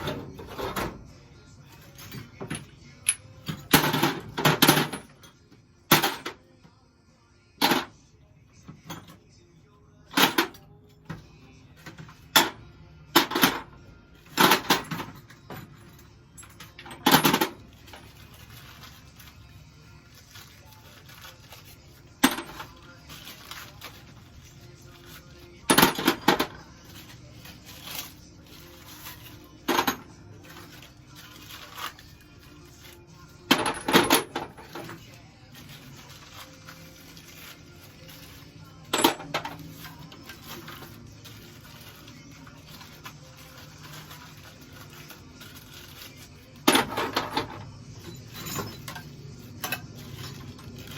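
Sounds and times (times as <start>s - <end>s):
small metal parts clattering: 1.6s - 6.4s, 13.2s - 50.9s
metal fittings clinking: 32.7s - 50.9s.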